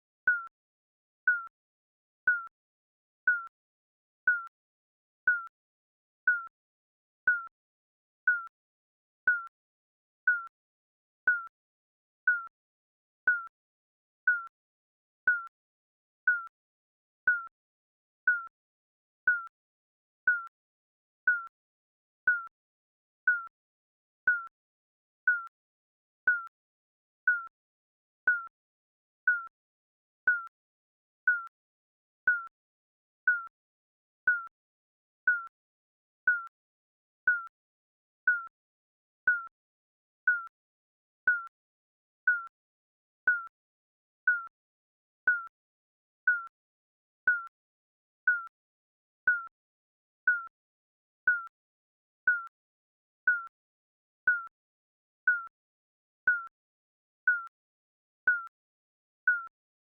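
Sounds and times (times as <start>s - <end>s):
timer beeping: 2.3s - 2.5s, 3.3s - 3.5s, 4.3s - 4.5s, 5.3s - 5.5s, 6.3s - 6.5s, 7.3s - 7.5s, 8.3s - 8.5s, 11.3s - 11.5s, 12.3s - 12.5s, 13.3s - 13.5s, 16.3s - 16.5s, 18.3s - 18.5s, 20.3s - 20.5s, 21.3s - 21.5s, 22.3s - 22.5s, 26.3s - 26.5s, 28.3s - 28.5s, 30.3s - 30.5s, 35.3s - 35.5s, 36.3s - 36.5s, 38.3s - 38.5s, 39.3s - 39.5s, 40.3s - 40.5s, 43.3s - 43.5s, 44.3s - 44.5s, 45.3s - 45.5s, 48.3s - 48.5s, 49.3s - 49.5s, 53.3s - 53.5s.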